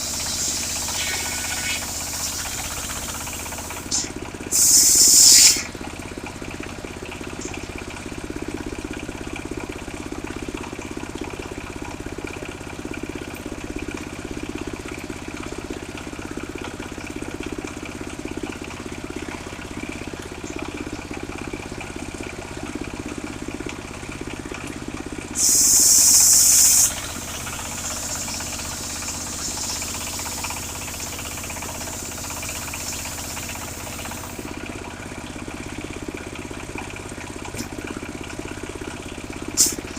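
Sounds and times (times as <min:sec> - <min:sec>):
loud high hiss: 0:00.0 - 0:05.7, 0:25.4 - 0:30.2
sawmill engine running: 0:00.0 - 0:39.9.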